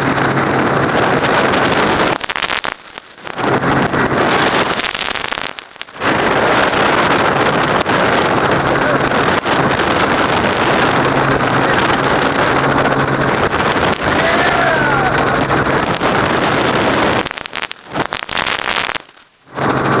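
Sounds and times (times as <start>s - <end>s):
helicopter engine and rotor noise: 0.0s - 1.4s, 10.9s - 13.6s.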